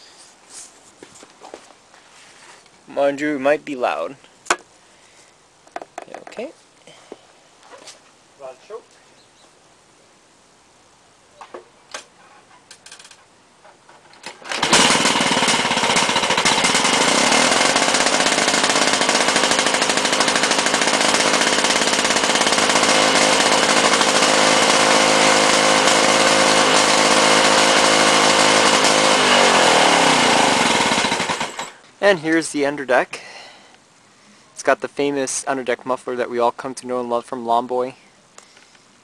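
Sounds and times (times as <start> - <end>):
lawn mower engine running: 14.0 - 31.8.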